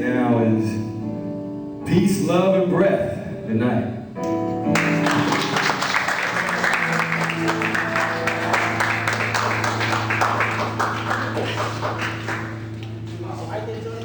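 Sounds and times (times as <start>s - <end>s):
music with low held notes: 0.0s - 14.0s
audience clapping: 4.7s - 13.1s.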